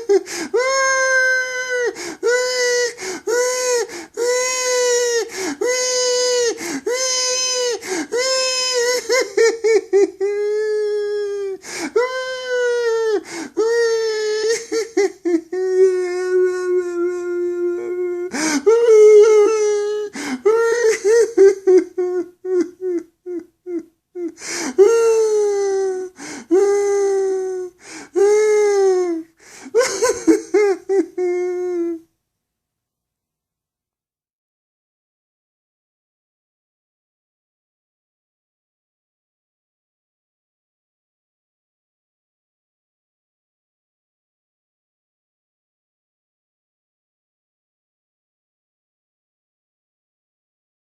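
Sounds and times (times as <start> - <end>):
man wailing: 0.0 - 23.8, 24.7 - 32.0
stuttering sobs: 0.0 - 32.1
gasping breaths: 0.2 - 0.6, 1.9 - 2.2, 2.9 - 4.2, 5.3 - 5.6, 6.6 - 6.9, 7.8 - 8.1, 11.6 - 12.0, 13.2 - 13.6, 18.3 - 18.7, 20.1 - 20.5, 24.3 - 24.8, 26.1 - 26.5, 27.7 - 28.2, 29.4 - 29.8.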